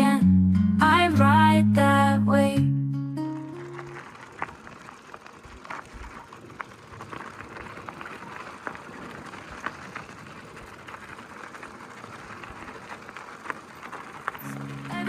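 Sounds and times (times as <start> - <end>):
bike tyres rolling on gravel: 1.0 - 15.0
small stones ticking: 3.3 - 15.0.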